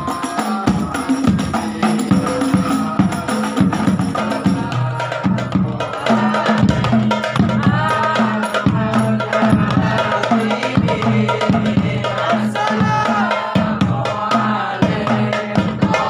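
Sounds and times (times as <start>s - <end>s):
frame drums playing: 0.0s - 16.0s.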